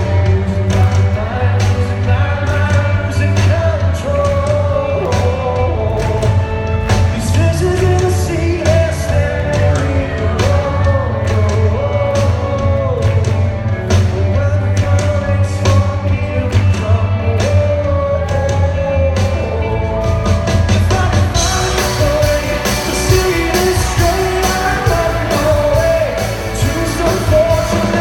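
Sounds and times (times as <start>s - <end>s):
bass line: 0.0s - 28.0s
man singing rock song: 0.0s - 28.0s.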